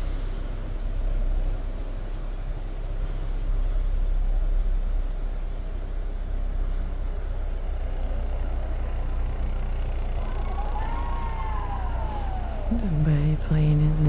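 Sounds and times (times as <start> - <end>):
steady low rumble: 0.0 - 14.0
faint rising and falling tone: 10.1 - 14.0.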